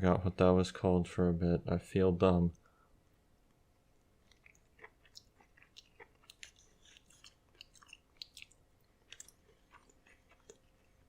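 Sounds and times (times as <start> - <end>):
chewing corn kernels: 4.2 - 11.0.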